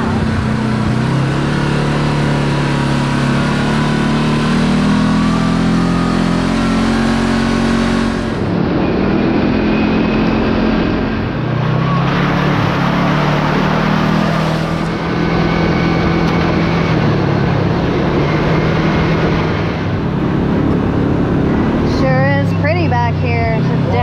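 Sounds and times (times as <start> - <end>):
utility vehicle engine running: 0.0 - 24.0.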